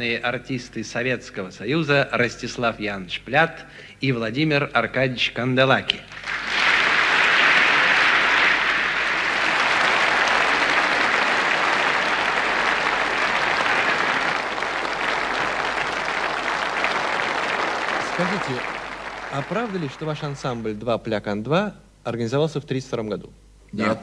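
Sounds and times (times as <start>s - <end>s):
audience applauding: 6.1s - 20.8s.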